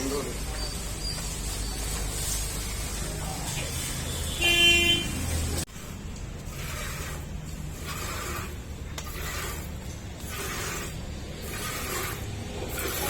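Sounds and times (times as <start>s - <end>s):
scraping over rough floor: 5.6s - 13.0s.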